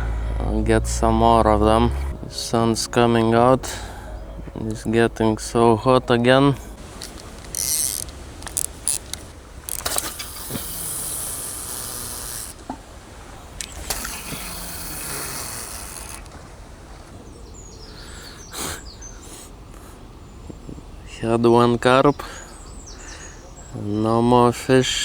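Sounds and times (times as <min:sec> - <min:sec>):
low rumble: 0:00.0 - 0:07.0
high hiss: 0:06.6 - 0:12.8, 0:13.6 - 0:16.3.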